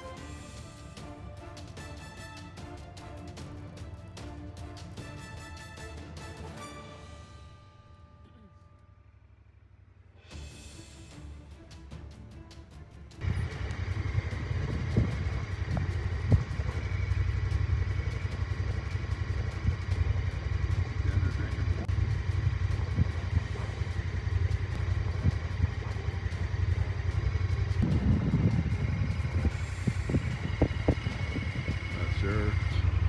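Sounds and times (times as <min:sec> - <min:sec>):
off-road vehicle engine rumble: 0:13.2 - 0:33.0.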